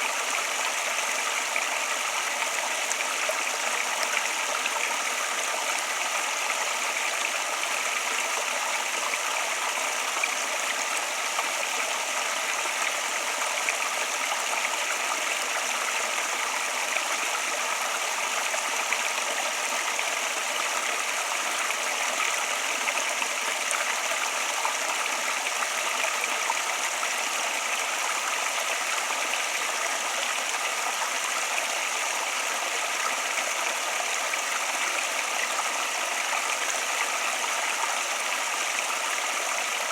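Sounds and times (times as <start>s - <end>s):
flowing water: 0.0s - 39.9s.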